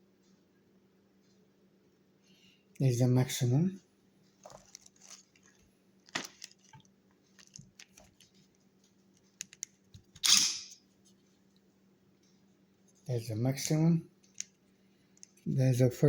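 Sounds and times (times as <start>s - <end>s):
light clicks and taps: 4.2s - 10.2s.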